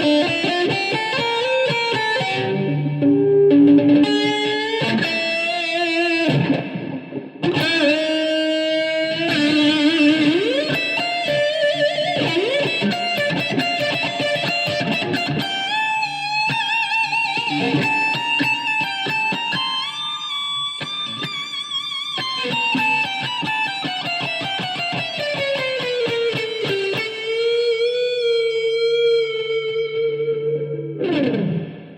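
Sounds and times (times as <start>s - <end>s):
electric guitar solo: 0.0s - 31.9s.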